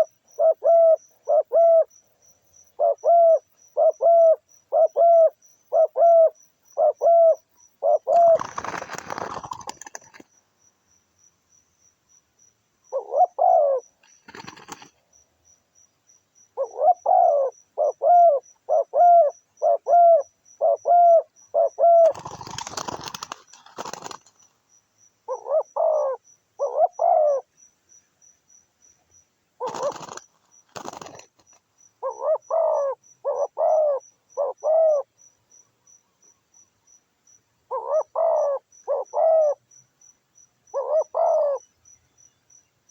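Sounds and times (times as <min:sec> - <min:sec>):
doves cooing: 0:00.0 - 0:01.9, 0:02.8 - 0:10.2, 0:12.9 - 0:14.9, 0:16.6 - 0:24.3, 0:25.3 - 0:27.5, 0:29.6 - 0:31.3, 0:32.0 - 0:35.1, 0:37.7 - 0:39.6, 0:40.8 - 0:41.6
wings flapping: 0:08.1 - 0:10.3, 0:14.0 - 0:15.0, 0:22.0 - 0:24.5, 0:29.6 - 0:31.6.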